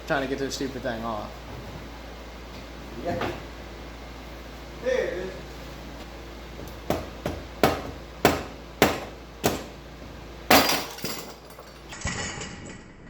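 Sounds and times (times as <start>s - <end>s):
hammer striking metal: 6.9s - 9.7s.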